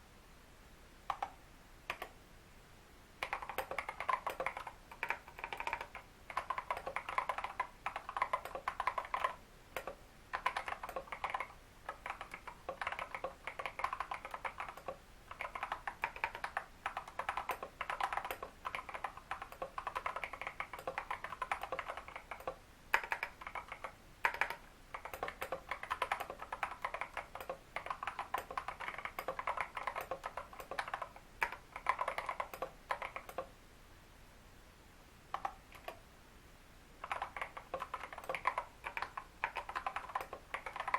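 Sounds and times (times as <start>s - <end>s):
mechanical keyboard typing: 1.1s - 2.2s, 3.2s - 33.5s, 35.3s - 36.0s, 37.0s - 40.9s.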